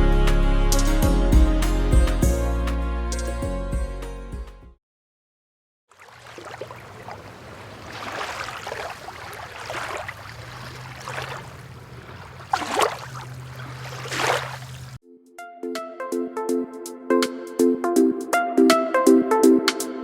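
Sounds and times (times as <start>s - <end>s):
water splashing against hull: 5.9s - 15.0s
motorboat engine droning: 6.6s - 15.0s.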